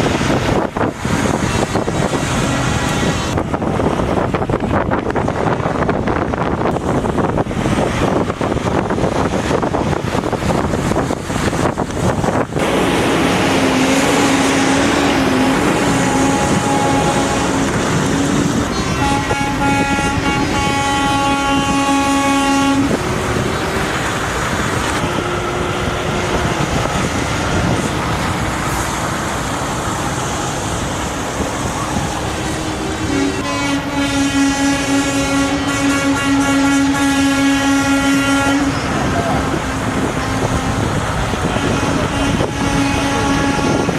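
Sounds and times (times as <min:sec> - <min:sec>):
trucks passing: 0:00.0 - 0:43.9
truck air horns blasting: 0:12.6 - 0:23.9, 0:32.4 - 0:43.9.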